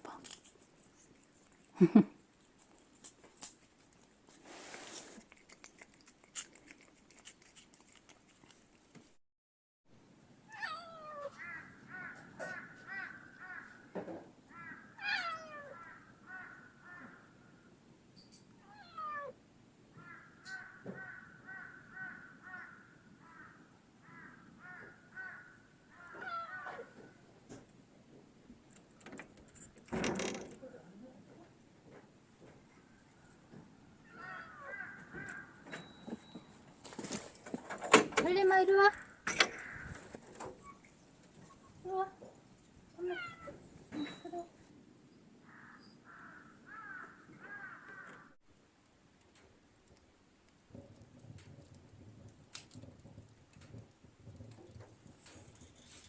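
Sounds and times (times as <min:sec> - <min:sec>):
cat trilling: 0:10.5 - 0:13.5, 0:14.6 - 0:17.1, 0:18.6 - 0:19.4, 0:26.0 - 0:27.0, 0:34.0 - 0:35.6, 0:43.0 - 0:44.5
cat meowing: 0:10.5 - 0:13.6, 0:14.9 - 0:17.1, 0:18.6 - 0:19.4, 0:26.0 - 0:27.0, 0:34.0 - 0:35.6, 0:43.0 - 0:44.3.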